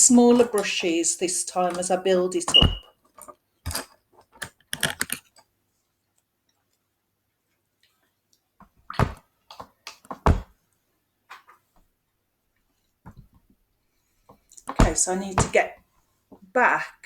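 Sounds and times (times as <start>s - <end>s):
heavy thumps: 14.7s - 15.8s.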